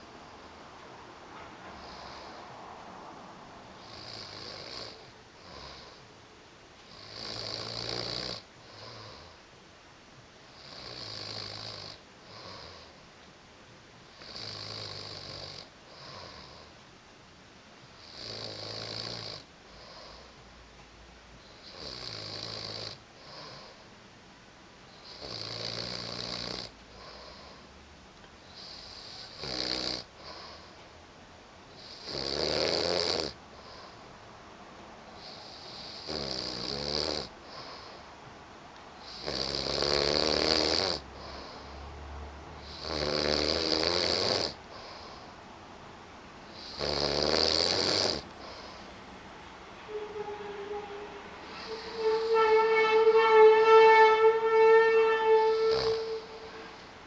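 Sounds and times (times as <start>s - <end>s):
man snoring loudly: 42.7s - 44.6s, 46.6s - 48.4s
soft breath: 48.2s - 53.6s.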